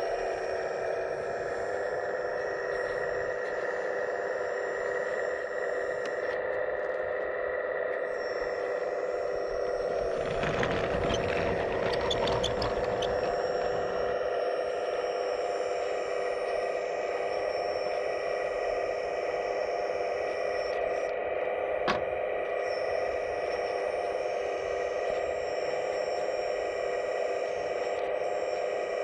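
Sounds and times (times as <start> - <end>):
electric motor whine: 0.0 - 29.0
clicking and scraping: 10.0 - 14.1.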